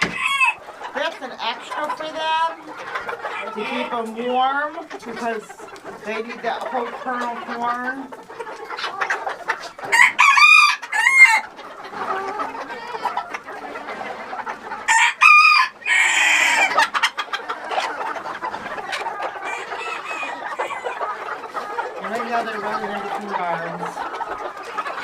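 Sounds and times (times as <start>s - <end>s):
chickens clucking: 0.0s - 25.0s
rooster crowing: 0.1s - 0.6s, 9.9s - 11.4s, 14.9s - 16.7s.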